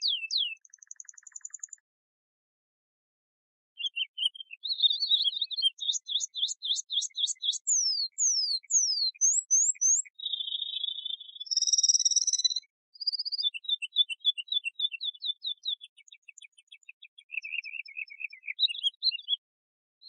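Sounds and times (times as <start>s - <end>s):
canary singing: 0.0s - 0.6s, 3.8s - 15.9s, 17.3s - 19.4s.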